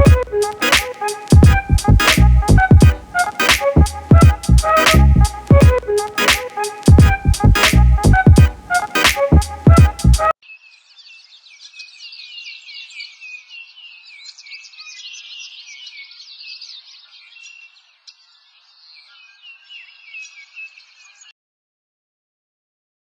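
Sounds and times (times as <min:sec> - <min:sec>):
small birds chirping: 0:10.4 - 0:21.3.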